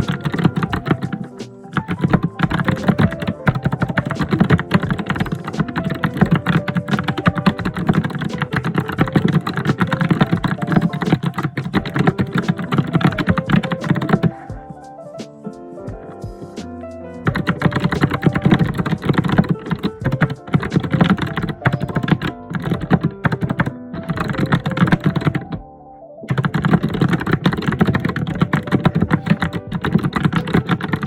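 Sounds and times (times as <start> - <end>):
fast typing on keyboard: 0.0 - 14.6, 17.2 - 25.6, 26.3 - 31.0.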